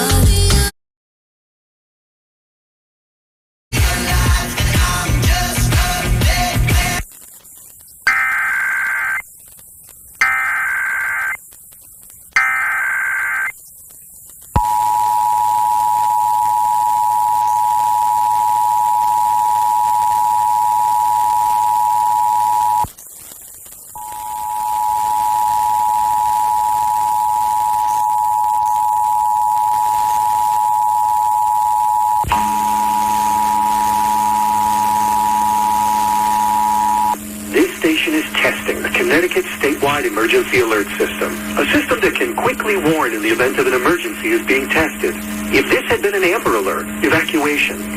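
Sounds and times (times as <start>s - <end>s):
screeching digital data bursts: 7.3s - 47.9s
two-tone alert signal: 8.1s - 9.2s, 10.2s - 11.4s, 12.4s - 13.5s.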